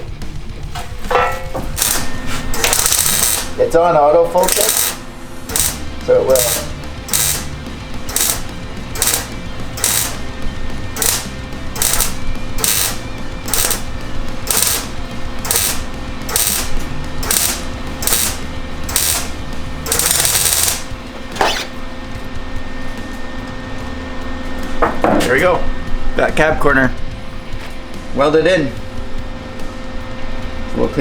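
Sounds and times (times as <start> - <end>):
welding arc crackling: 0.0 - 22.0.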